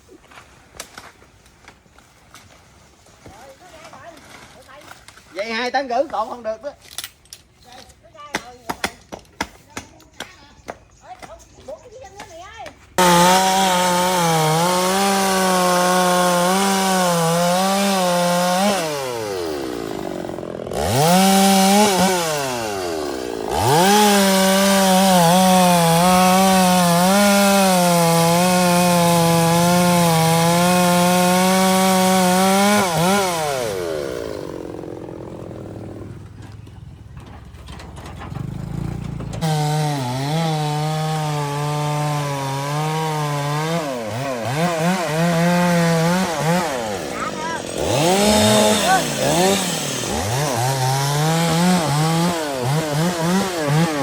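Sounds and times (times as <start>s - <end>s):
chainsaw cutting wood: 13.0s - 36.4s, 38.3s - 54.0s.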